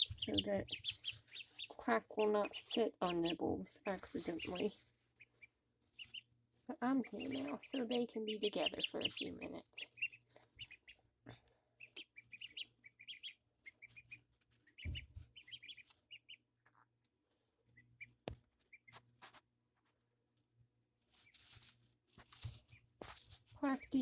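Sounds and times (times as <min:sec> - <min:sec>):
ducklings peeping: 0:00.0 - 0:19.5, 0:21.0 - 0:24.0
soft scuffs and bumps: 0:21.1 - 0:23.6.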